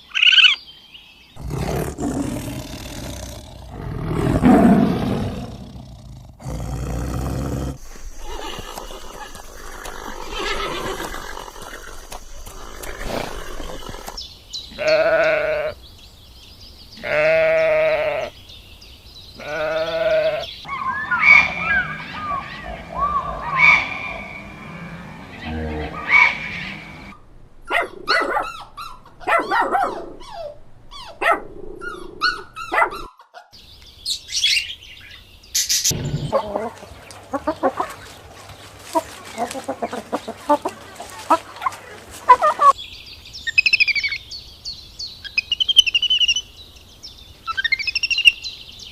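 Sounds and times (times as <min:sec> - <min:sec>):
chirping and clicking animal calls: 0:01.4 - 0:15.3, 0:19.4 - 0:34.0, 0:35.6 - 0:42.8
goat bleating: 0:17.0 - 0:18.3, 0:19.4 - 0:20.4.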